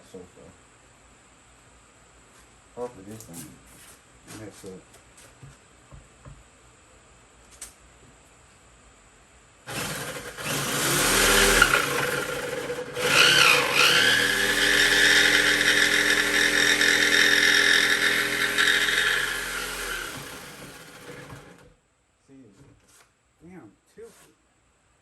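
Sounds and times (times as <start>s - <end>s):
power tool cutting wood: 9.7s - 21.7s.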